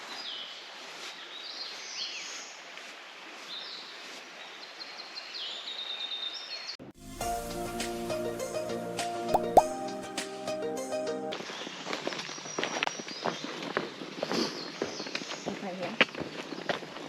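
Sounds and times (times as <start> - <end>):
music: 7.0 - 11.4.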